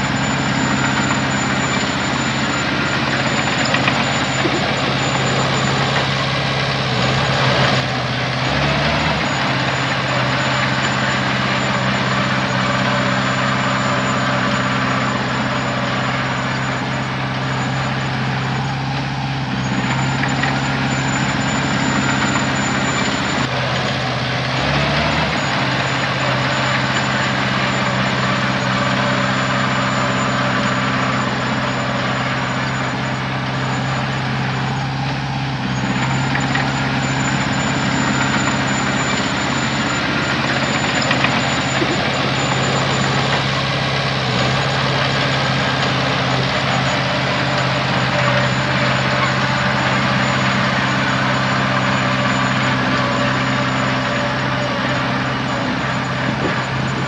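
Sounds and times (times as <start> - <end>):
heavy diesel engine running: 0.0 - 57.0.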